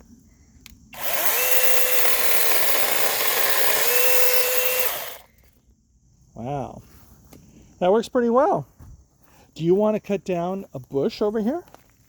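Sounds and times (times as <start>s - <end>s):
mini chainsaw cutting branch: 1.0s - 5.4s.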